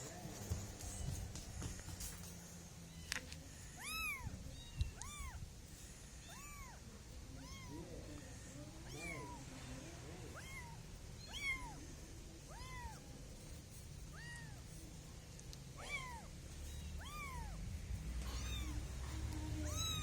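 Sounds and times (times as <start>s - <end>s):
kitten meowing: 3.8s - 5.5s, 6.2s - 7.9s, 8.8s - 9.4s, 10.3s - 11.8s, 12.4s - 13.0s, 14.1s - 14.6s, 15.7s - 17.6s, 18.2s - 19.0s, 19.6s - 20.0s.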